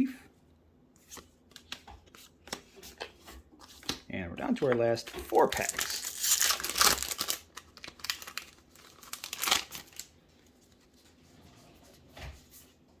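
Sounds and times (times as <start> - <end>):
foil wrapper crinkling and tearing: 5.3 - 10.2.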